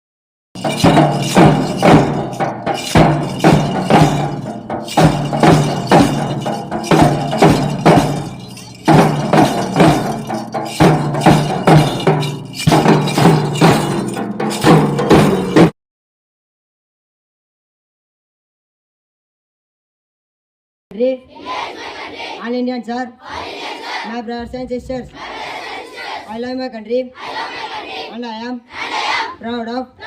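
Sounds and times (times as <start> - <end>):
percussive beat: 0.6 - 15.7.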